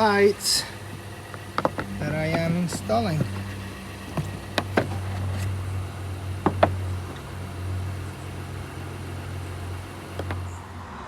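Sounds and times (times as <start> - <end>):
steady low hum: 0.0 - 10.6.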